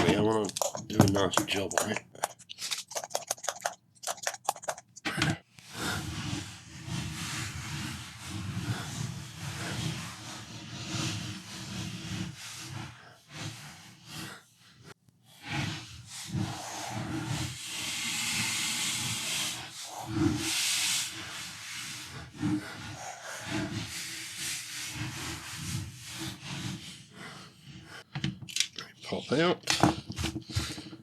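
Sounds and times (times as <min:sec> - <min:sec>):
scrubbing on plastic: 0:00.0 - 0:05.1, 0:29.0 - 0:31.0
cleaning spray hissing: 0:17.6 - 0:21.2.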